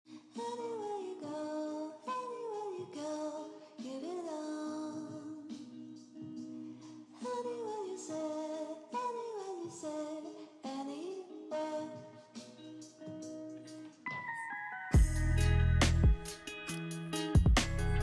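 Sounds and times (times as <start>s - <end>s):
background music with singing: 0.1s - 18.0s.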